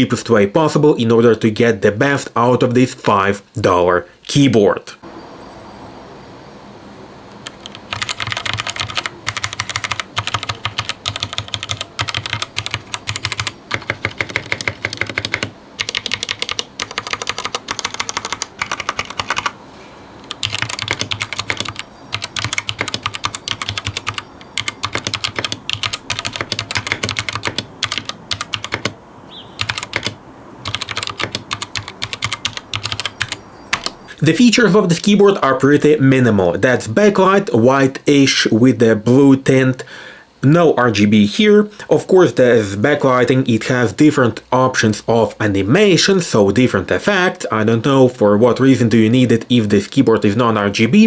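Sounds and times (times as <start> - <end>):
keyboard keystroke clacks: 7.4 - 19.6, 20.2 - 29.0, 29.6 - 34.0.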